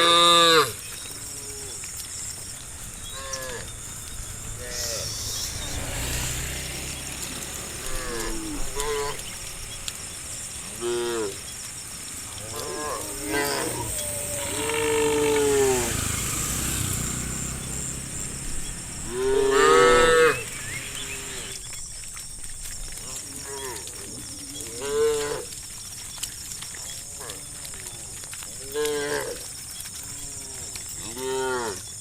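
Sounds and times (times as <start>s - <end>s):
cows mooing: 0.0s - 21.6s, 23.0s - 25.6s, 26.9s - 31.9s.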